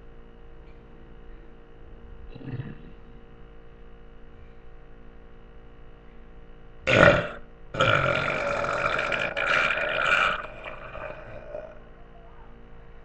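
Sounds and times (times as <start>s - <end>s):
person burping: 2.4s - 3.0s, 6.9s - 11.8s.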